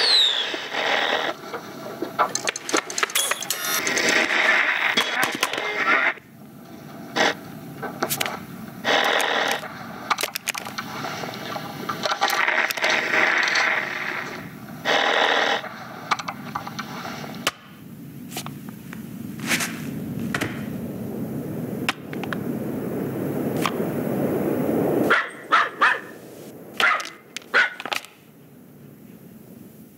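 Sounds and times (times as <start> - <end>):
scraping and rustling effects: 0.5 - 17.5, 18.2 - 20.8
sharp clicks and knocks: 2.2 - 4.2.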